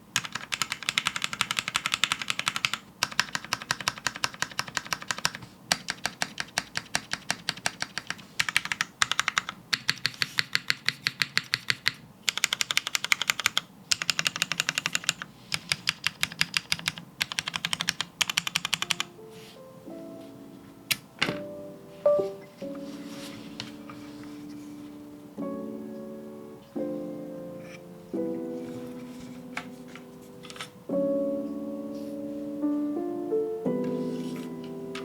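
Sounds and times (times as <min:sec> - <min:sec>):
mechanical keyboard clatter: 0:00.2 - 0:19.1
plucked-sounding music: 0:21.4 - 0:24.2.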